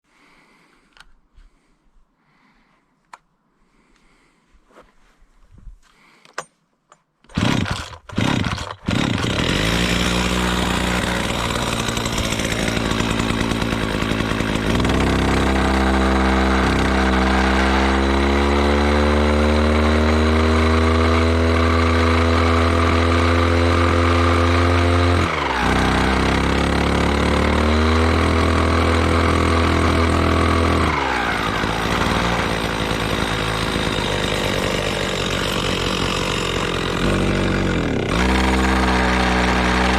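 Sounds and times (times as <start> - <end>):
pull-start cord pulls: 7.2 - 18.7
brushcutter engine revving and idling: 7.3 - 39.9.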